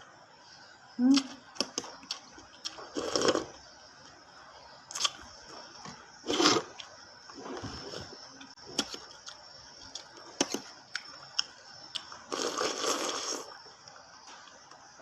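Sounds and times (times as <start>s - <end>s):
food being chewed: 1.6s - 3.5s.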